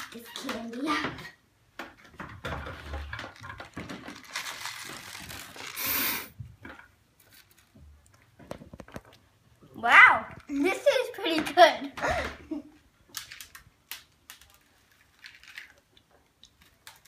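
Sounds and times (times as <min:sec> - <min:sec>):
tiny candies rattling: 0:03.1 - 0:06.1, 0:13.1 - 0:17.0
candy box crinkling and tearing: 0:03.3 - 0:06.1, 0:13.1 - 0:17.0.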